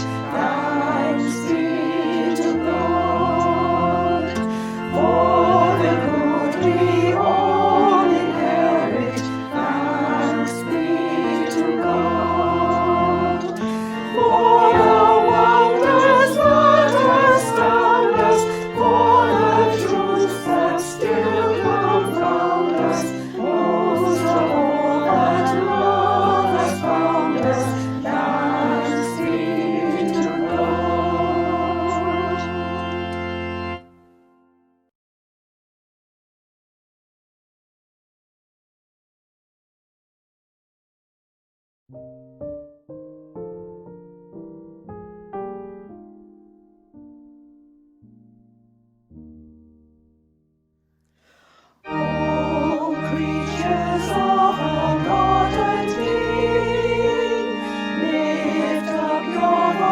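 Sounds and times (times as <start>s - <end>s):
choir singing a hymn: 0.0s - 33.8s, 51.8s - 59.9s
instrumental accompaniment: 0.0s - 34.6s, 51.8s - 59.9s.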